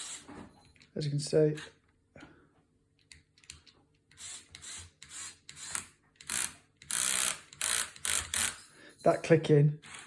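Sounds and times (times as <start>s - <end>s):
toy motor gear clicking: 4.1s - 8.7s.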